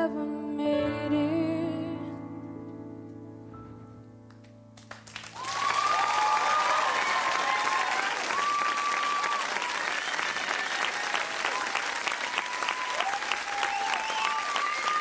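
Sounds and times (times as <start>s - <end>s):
audience applause: 4.8s - 15.0s
audience cheering: 5.3s - 15.0s
audience whistling: 5.4s - 15.0s.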